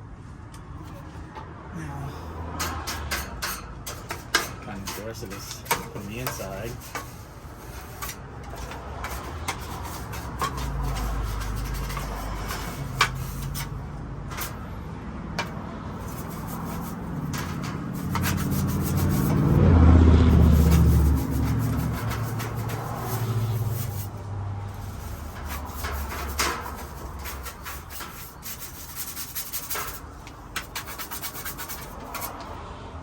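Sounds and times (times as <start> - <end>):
rubbing and scraping: 2.6 - 32.6.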